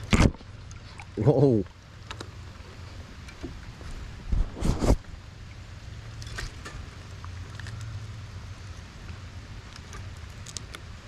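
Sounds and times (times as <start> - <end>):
low wind rumble on microphone: 2.4 - 11.0.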